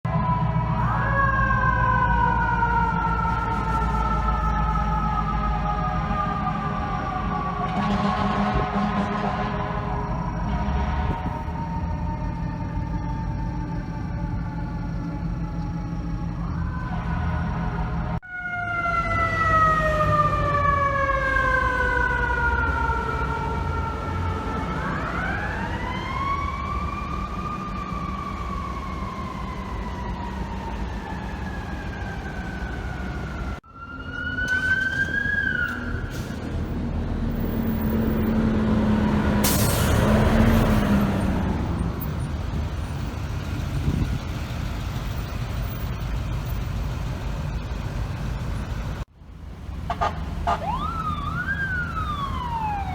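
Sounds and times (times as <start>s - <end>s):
loud truck noise: 0.0s - 18.2s, 19.0s - 52.9s
mechanical siren wail: 0.1s - 39.4s, 49.9s - 52.9s
siren whoop: 0.1s - 42.2s, 50.5s - 52.9s
air horn blast: 7.7s - 11.4s.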